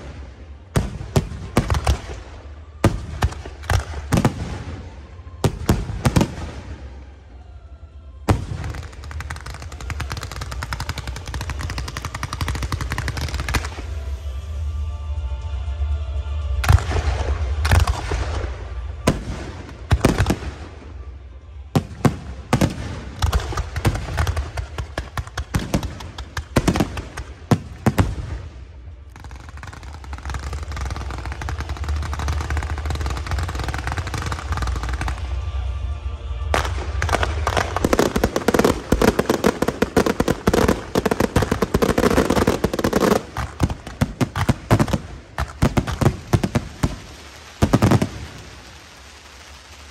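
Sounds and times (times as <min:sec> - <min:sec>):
fireworks crackling barrage: 0:00.0 - 0:49.9
low rumble: 0:10.8 - 0:24.1.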